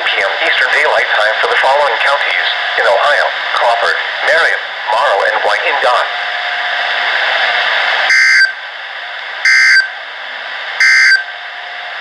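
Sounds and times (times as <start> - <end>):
radio static: 0.0 - 6.2.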